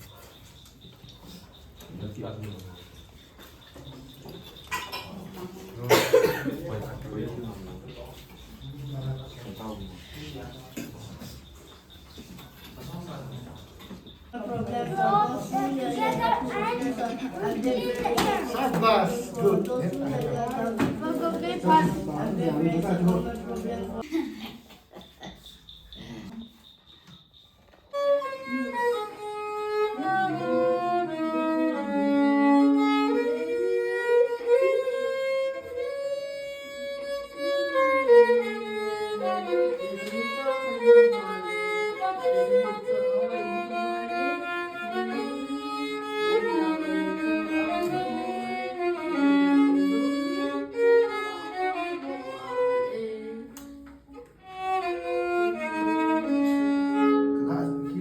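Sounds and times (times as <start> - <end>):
instrumental music with gliding notes: 54.1 - 58.0.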